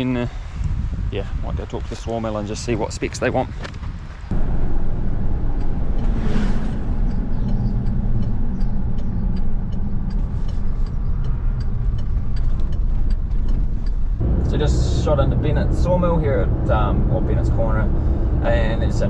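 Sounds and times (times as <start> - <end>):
road noise: 0.0 - 19.0
vehicle engine rumble: 3.8 - 19.0.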